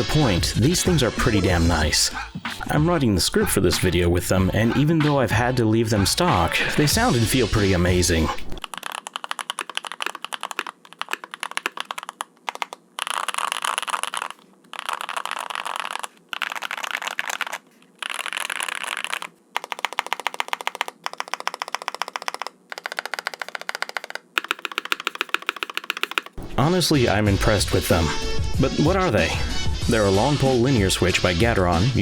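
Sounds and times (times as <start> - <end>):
mechanical keyboard key clacks: 8.6 - 26.4.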